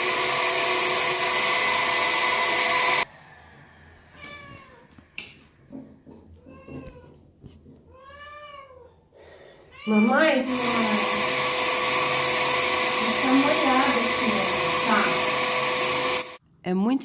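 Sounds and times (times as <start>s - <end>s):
pet blow dryer whine: 0.0s - 3.4s, 10.0s - 16.4s
cat meowing: 4.1s - 5.0s, 6.4s - 7.2s, 7.9s - 9.0s, 9.7s - 10.4s.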